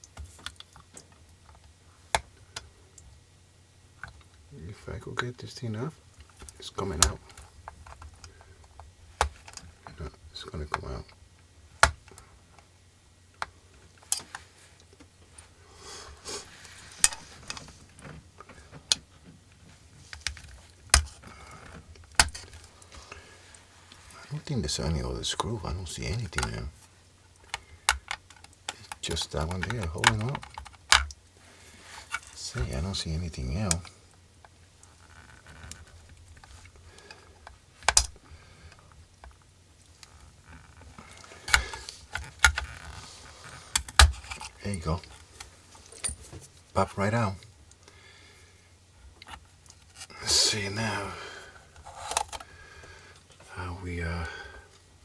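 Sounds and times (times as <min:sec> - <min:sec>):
sharp clicks and knocks: 0:37.4 - 0:38.2.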